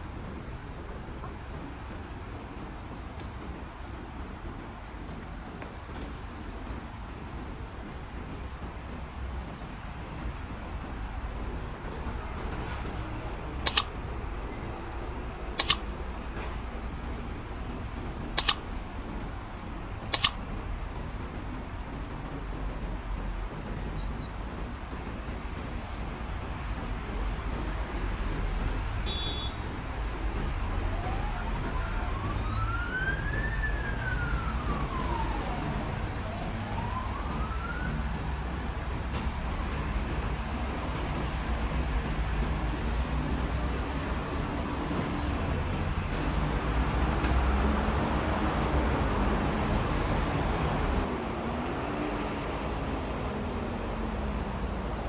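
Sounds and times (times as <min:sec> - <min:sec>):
street traffic rumble: 0:00.0 - 0:55.0
sharp click: 0:13.6 - 0:13.9, 0:15.6 - 0:15.8, 0:18.4 - 0:18.6, 0:20.1 - 0:20.4
distant siren wailing: 0:29.1 - 0:41.9, 0:46.2 - 0:55.0.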